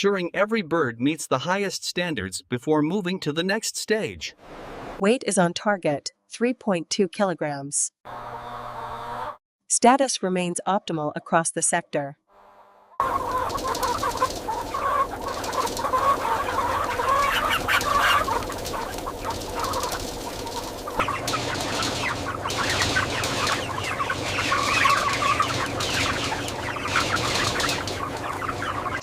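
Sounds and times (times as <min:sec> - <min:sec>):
chickens clucking: 0:08.1 - 0:09.4, 0:13.0 - 0:29.0.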